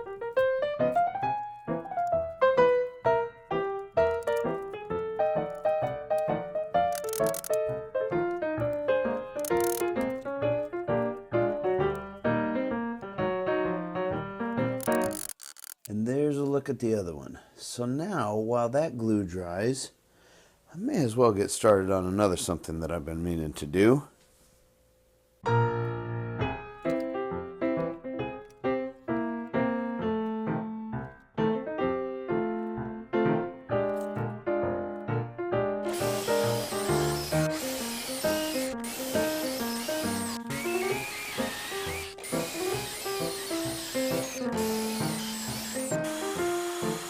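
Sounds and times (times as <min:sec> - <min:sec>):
piano melody with chords: 0:00.0 - 0:14.9, 0:25.4 - 0:37.6.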